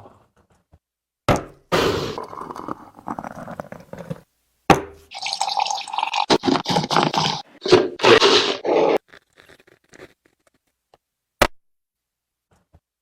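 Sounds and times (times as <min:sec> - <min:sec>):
liquid pouring and dripping: 0:05.1 - 0:07.4.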